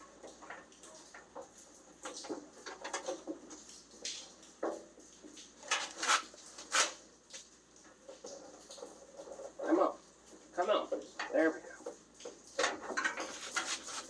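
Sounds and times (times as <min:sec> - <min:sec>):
scraping and knocking of truck grille: 0:01.2 - 0:03.4, 0:05.6 - 0:07.0, 0:12.6 - 0:14.0.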